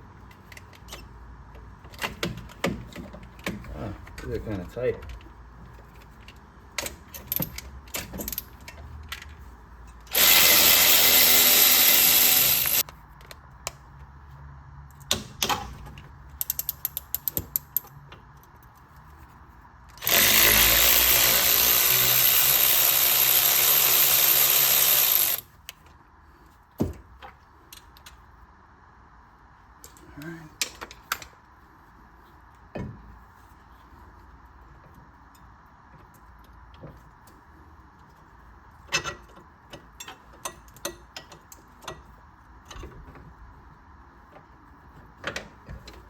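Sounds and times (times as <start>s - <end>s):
handheld power tool running: 10.1s - 12.8s, 20.0s - 25.4s
ratchet clicks: 10.1s - 12.8s, 20.0s - 25.4s.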